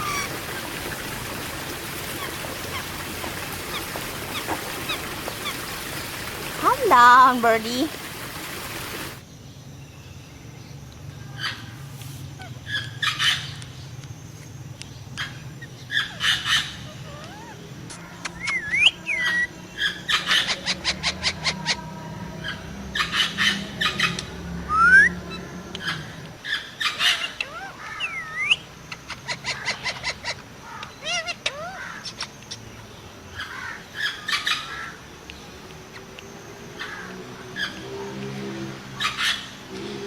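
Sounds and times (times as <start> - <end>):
parrot gliding whistles: 18.4 - 19.5, 24.7 - 25.4, 28.0 - 28.6.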